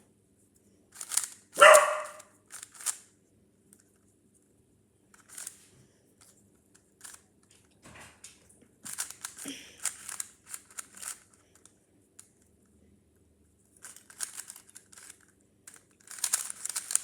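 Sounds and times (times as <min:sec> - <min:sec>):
speed cube clicks: 0:01.0 - 0:03.1, 0:05.2 - 0:05.6, 0:06.8 - 0:07.2, 0:08.9 - 0:12.3, 0:13.8 - 0:17.0
dog barking: 0:01.6 - 0:02.3.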